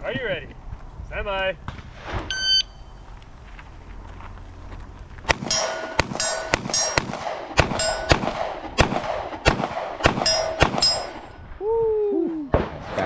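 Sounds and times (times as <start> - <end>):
handgun shots: 5.3 - 11.2
bullets ringing steel targets: 5.3 - 11.5.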